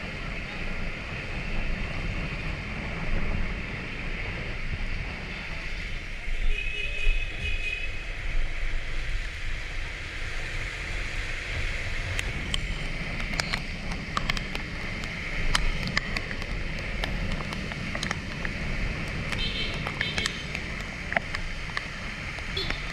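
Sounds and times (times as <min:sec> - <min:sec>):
tyres hissing on wet road: 0:00.0 - 0:22.9
wind rumble on microphone: 0:00.0 - 0:22.9
raindrops ticking: 0:12.0 - 0:22.9.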